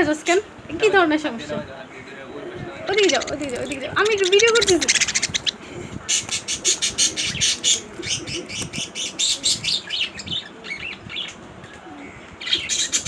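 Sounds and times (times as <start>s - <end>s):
baby budgerigar chirping: 2.9s - 11.2s.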